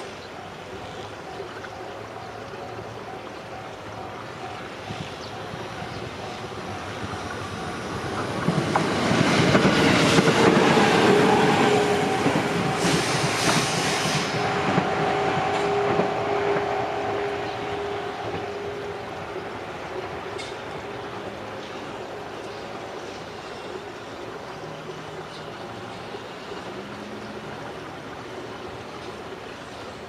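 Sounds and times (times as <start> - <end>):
train wheels on rails: 3.1 - 23.9.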